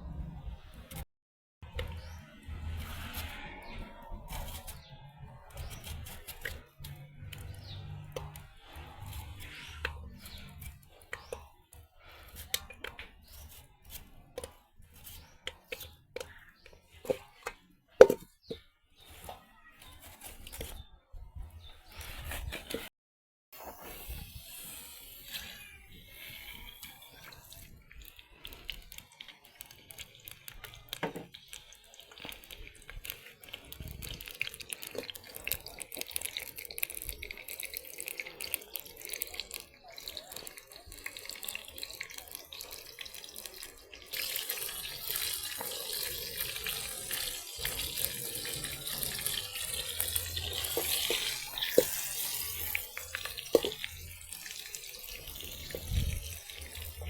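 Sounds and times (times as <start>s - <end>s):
water splashing into sink: 27.2s - 57.0s.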